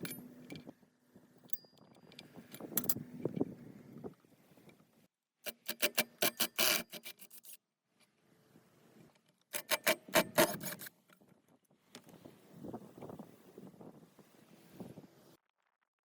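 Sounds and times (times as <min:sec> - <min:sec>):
hand tool scraping metal: 0:05.5 - 0:07.6, 0:09.5 - 0:11.0.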